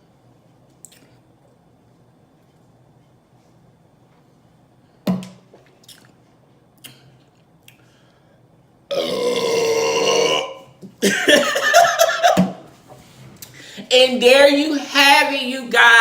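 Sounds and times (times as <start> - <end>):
woman burping: 8.9 - 12.4.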